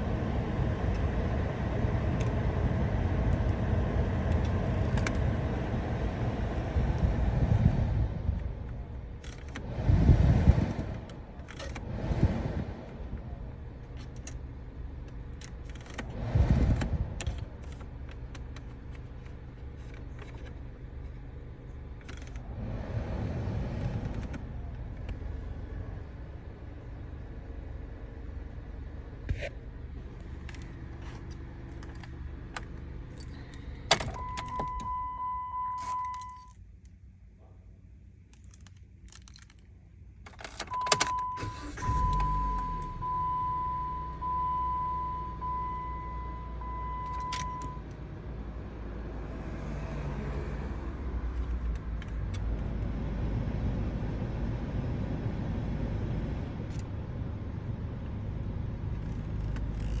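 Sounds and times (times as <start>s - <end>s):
car keys jangling and clicking: 8.6s - 9.6s, 10.8s - 11.9s, 13.8s - 21.2s, 21.9s - 22.4s, 30.2s - 37.0s, 38.2s - 43.5s, 46.6s - 48.0s, 51.3s - 52.4s, 59.0s - 60.0s.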